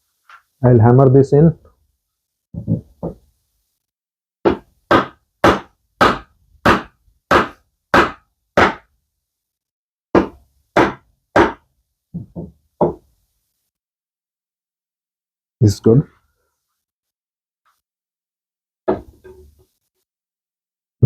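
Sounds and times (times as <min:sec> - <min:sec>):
hammer striking wood: 0:04.4 - 0:08.9, 0:10.1 - 0:13.1, 0:18.9 - 0:19.4.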